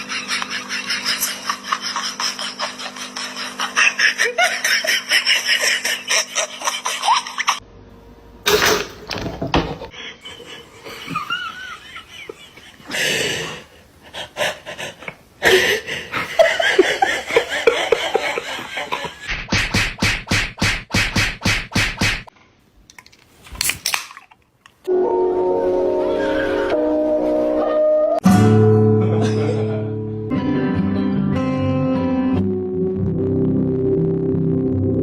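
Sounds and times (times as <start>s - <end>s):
people laughing: 0.0s - 7.6s, 10.0s - 19.3s, 28.9s - 30.0s.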